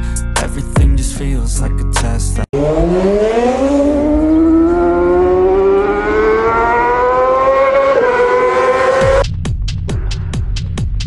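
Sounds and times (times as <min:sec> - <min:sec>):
motor whine rising in pitch: 0:02.6 - 0:09.2.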